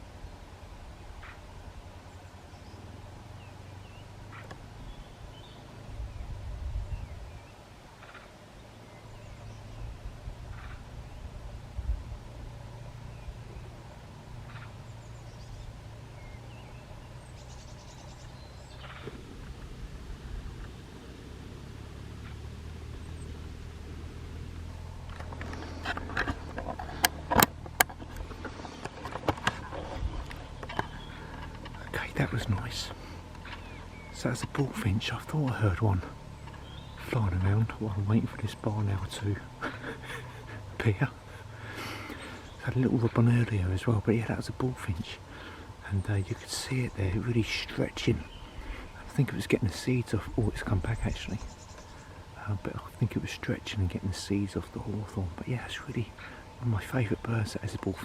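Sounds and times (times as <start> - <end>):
low outdoor rumble: 0.0 - 58.0
songbirds chirping: 0.0 - 58.0
rustling: 18.2 - 33.9.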